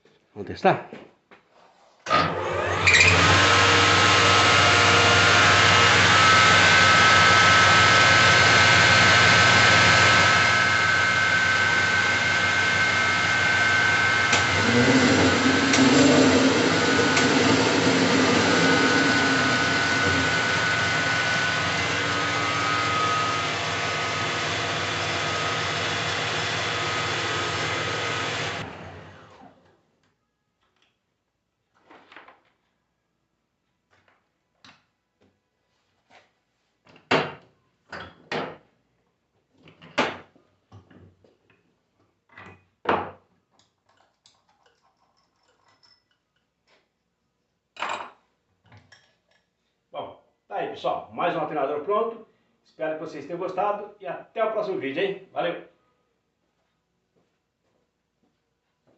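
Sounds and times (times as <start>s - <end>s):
alternator machine whine: 14.0s - 29.2s.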